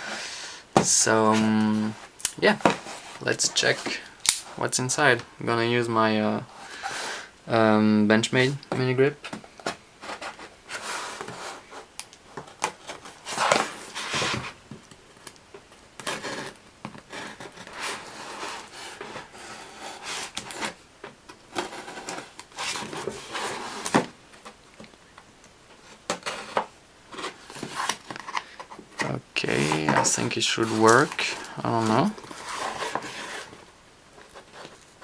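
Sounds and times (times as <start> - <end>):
cardboard box rustling: 26.0 - 35.0.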